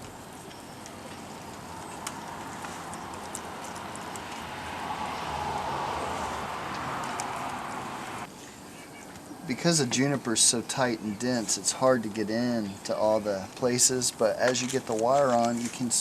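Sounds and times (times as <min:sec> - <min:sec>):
foliage rustling: 0:00.0 - 0:09.9
wire clicking on branch: 0:06.6 - 0:07.7.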